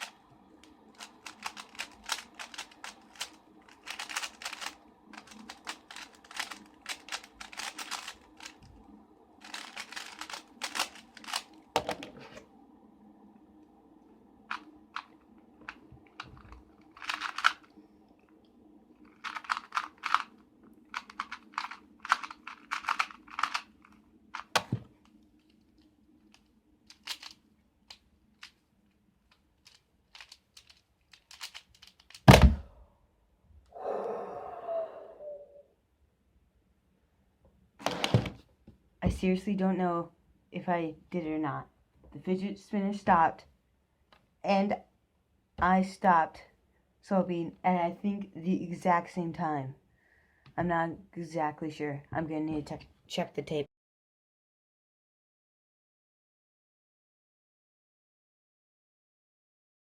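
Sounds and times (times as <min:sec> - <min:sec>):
puzzle cubes clicking clatter: 0:00.0 - 0:08.7, 0:09.4 - 0:11.6, 0:15.7 - 0:17.7, 0:19.1 - 0:24.8, 0:26.9 - 0:28.6, 0:29.6 - 0:32.3
fidget spinner low hum: 0:00.0 - 0:32.8.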